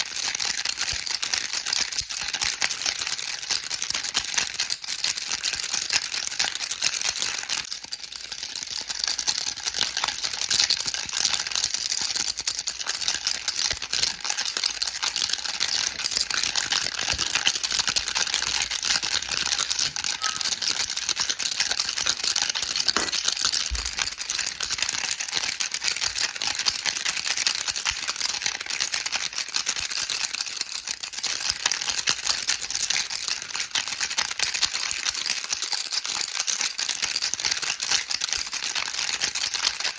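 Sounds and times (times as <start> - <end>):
baby rattle shaking: 0.0 - 39.9.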